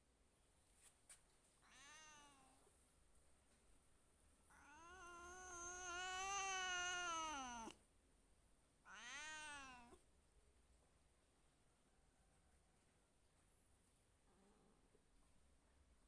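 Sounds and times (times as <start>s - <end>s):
cat meowing: 1.6s - 2.6s, 4.5s - 7.8s, 8.9s - 10.0s.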